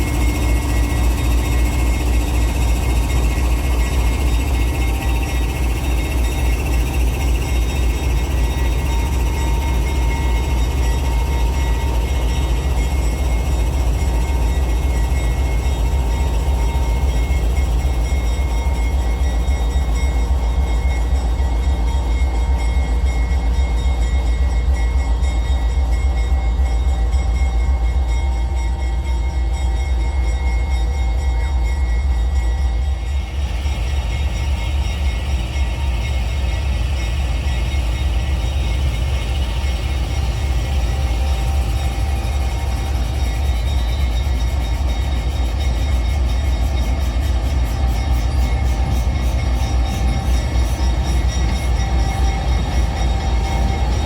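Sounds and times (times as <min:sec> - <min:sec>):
freight train rumbling past: 0:34.2 - 0:54.0.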